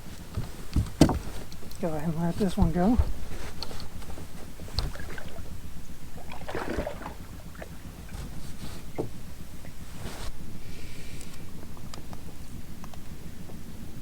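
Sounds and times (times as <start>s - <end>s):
light knocks on boat: 0.2s - 5.5s
water splash: 6.1s - 8.1s.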